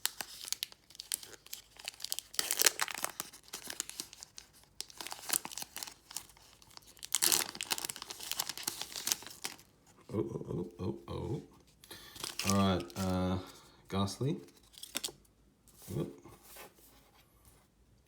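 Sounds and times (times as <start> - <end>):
foil wrapper tearing and crinkling: 0.0 - 9.7, 12.1 - 13.4, 14.6 - 15.2.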